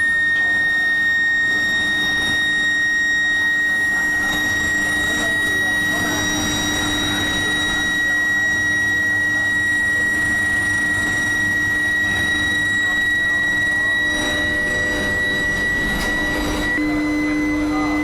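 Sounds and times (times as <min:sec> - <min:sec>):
furnace high whine: 0:00.0 - 0:18.0
machinery noise: 0:00.0 - 0:18.0.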